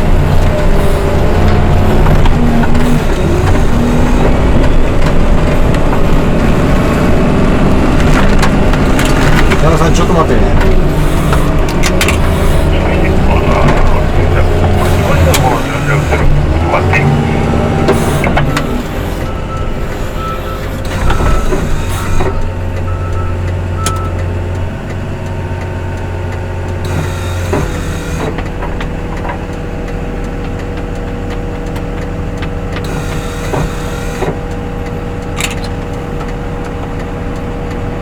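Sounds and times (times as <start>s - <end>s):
diesel engine running: 0.0s - 38.0s
short beeps: 17.3s - 21.6s, 22.9s - 24.2s.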